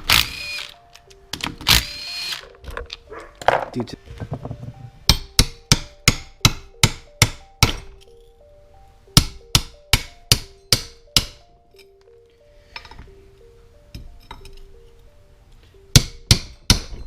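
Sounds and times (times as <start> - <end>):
hammer striking metal: 5.0 - 8.1, 9.2 - 11.5, 15.9 - 17.0.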